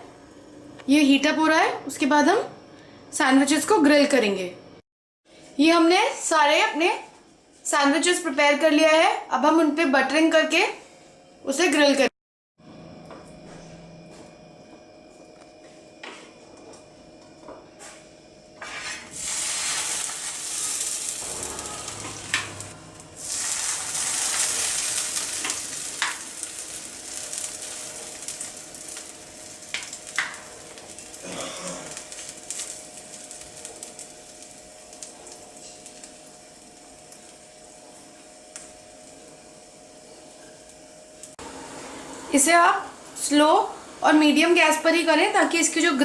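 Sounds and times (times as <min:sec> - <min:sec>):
sandwiches sizzling on a pan: 0:18.7 - 0:39.6.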